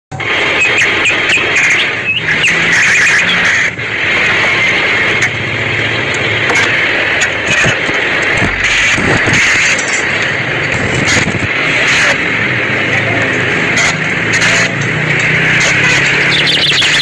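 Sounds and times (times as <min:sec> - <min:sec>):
welding arc pops: 0:06.1 - 0:12.2
arc welding crackling hiss: 0:06.8 - 0:11.8.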